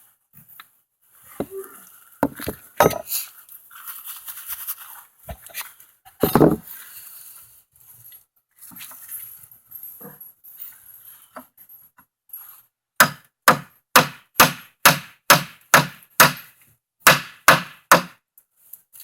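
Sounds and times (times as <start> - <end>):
board scraping and creaking: 5.3 - 6.8
rubber mallet knocking on crowbar: 6.2 - 6.6.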